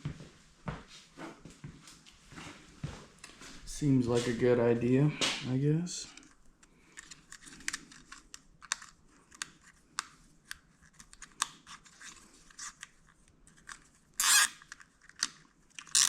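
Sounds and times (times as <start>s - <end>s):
plastic zip tie clicks: 13.6s - 16.0s
zip tie rasping pulled through: 14.2s - 14.5s.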